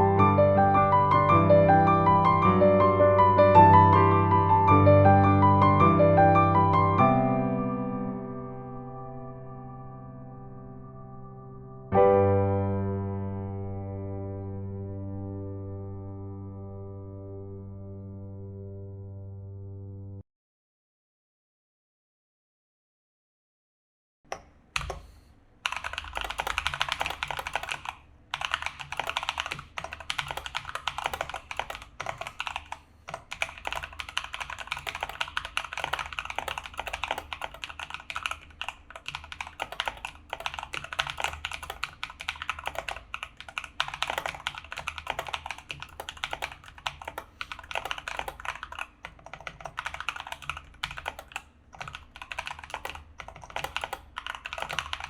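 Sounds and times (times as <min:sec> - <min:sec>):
mechanical keyboard typing: 0:24.3 - 0:55.0.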